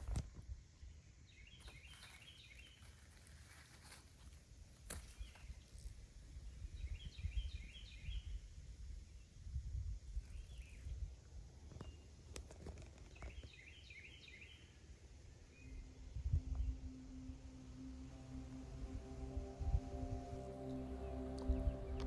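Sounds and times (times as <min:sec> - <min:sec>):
songbird chirping trills: 0:00.8 - 0:04.0, 0:13.0 - 0:22.0
uneven low rumble: 0:14.9 - 0:22.0.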